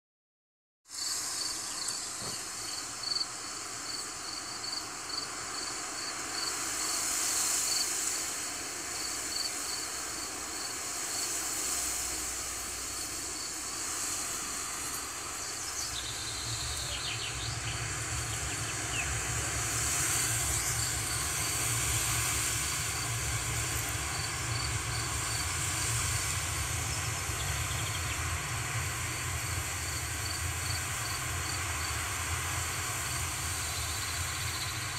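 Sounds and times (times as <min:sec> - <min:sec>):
insect chirping: 0:00.9 - 0:08.4, 0:09.0 - 0:19.1, 0:22.8 - 0:25.5, 0:29.8 - 0:31.6
wind through grass: 0:00.9 - 0:34.9.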